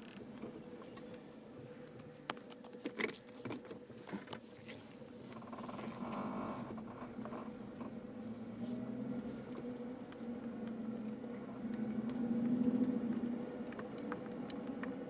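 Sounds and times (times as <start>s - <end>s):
vehicle engine hum: 0.0s - 15.0s.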